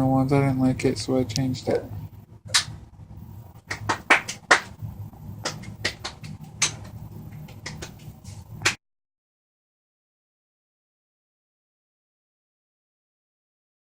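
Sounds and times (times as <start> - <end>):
faint low hum: 0.0 - 8.8
sharp clicks and knocks: 5.4 - 8.8.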